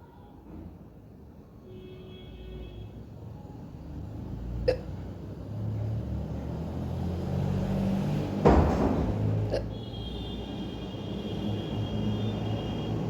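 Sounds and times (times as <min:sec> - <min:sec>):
person hiccuping: 0:04.6 - 0:04.9, 0:09.5 - 0:09.7.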